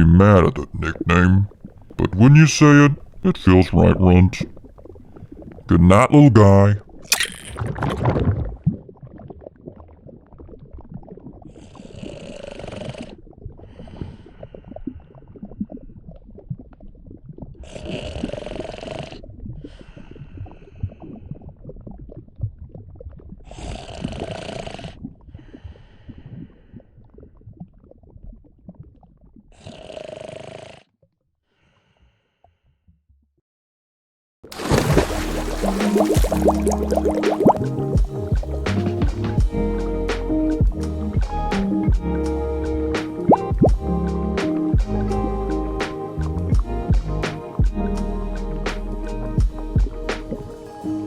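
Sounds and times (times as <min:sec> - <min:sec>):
low gurgling and squelching: 0:00.0 - 0:32.8, 0:34.5 - 0:51.0
slow snoring: 0:11.7 - 0:13.2, 0:17.6 - 0:19.2, 0:23.5 - 0:25.0, 0:29.6 - 0:30.9
soft breath out: 0:31.5 - 0:32.8.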